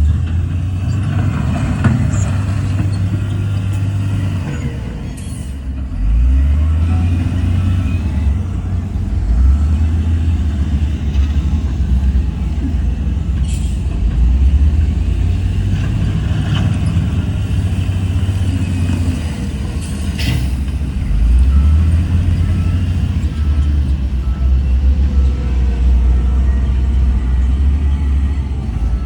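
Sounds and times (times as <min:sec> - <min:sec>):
heavy diesel machinery rumbling: 0:00.0 - 0:29.0
faint reversing beeps: 0:06.4 - 0:12.6, 0:20.9 - 0:29.0.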